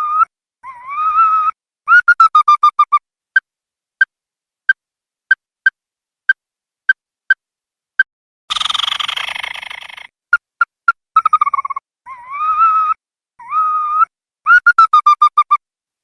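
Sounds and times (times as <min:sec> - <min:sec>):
bird calling: 0:08.5 - 0:10.1.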